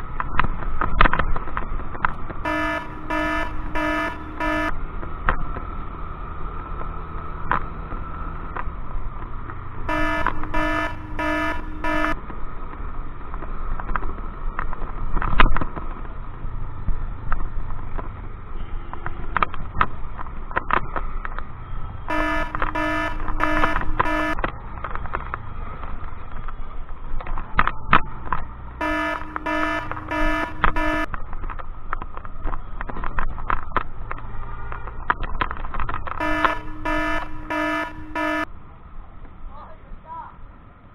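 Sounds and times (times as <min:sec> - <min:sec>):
electronic beeper beeping: 0:02.5 - 0:04.7, 0:09.9 - 0:12.2, 0:22.1 - 0:24.4, 0:28.8 - 0:31.1, 0:36.2 - 0:38.5
scooter engine rumble: 0:08.4 - 0:12.2, 0:22.1 - 0:38.7.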